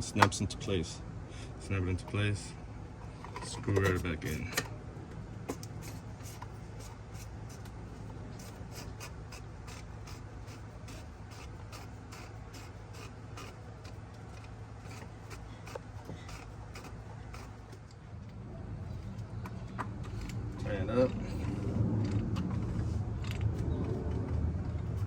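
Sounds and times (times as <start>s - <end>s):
low hum: 16.3s - 25.0s.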